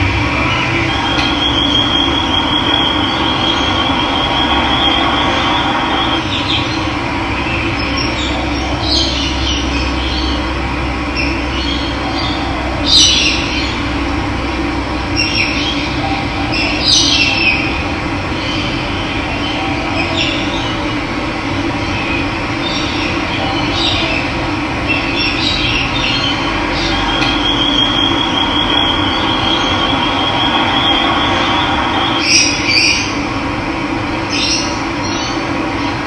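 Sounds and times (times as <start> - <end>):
thin high trill: 0.0 - 6.4, 26.6 - 33.2
birds calling: 0.0 - 14.2, 15.0 - 33.3.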